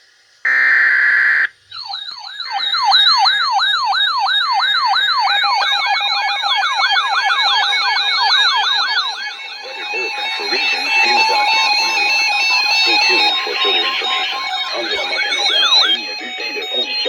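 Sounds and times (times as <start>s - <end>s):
electronic siren sweeps: 0.5s - 17.0s
broken beeping tone: 5.4s - 17.0s.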